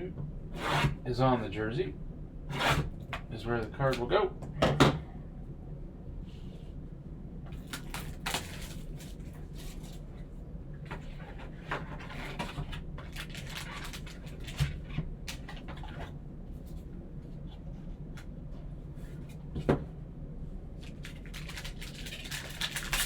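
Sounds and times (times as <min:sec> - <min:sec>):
steady low hum: 0:00.0 - 0:23.0
rustling and crackling of wrap: 0:07.6 - 0:10.2, 0:12.6 - 0:15.7, 0:20.8 - 0:23.0.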